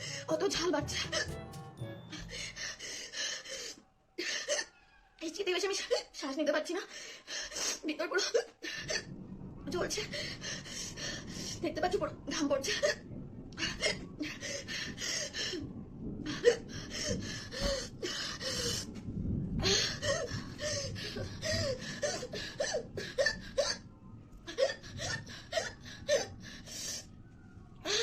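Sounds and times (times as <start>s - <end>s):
woman gasping and panting: 19.6s - 23.8s.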